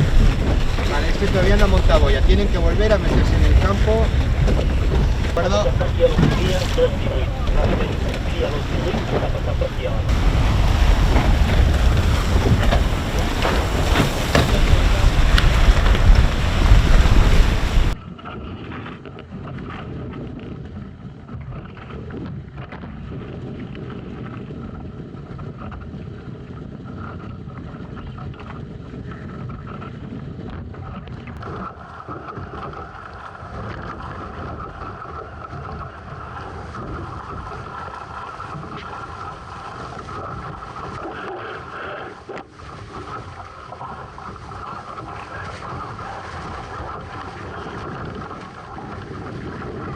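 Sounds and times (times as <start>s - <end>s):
steady rushing: 0.0s - 18.0s
wind buffeting microphone: 0.0s - 49.9s.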